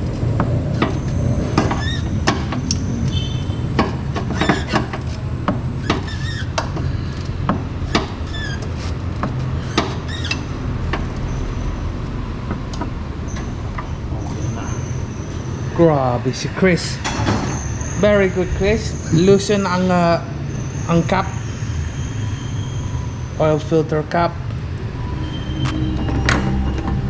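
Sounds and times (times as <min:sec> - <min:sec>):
short squeaks: 0:00.8 - 0:03.5, 0:04.2 - 0:07.3, 0:07.9 - 0:09.0, 0:25.0 - 0:27.0.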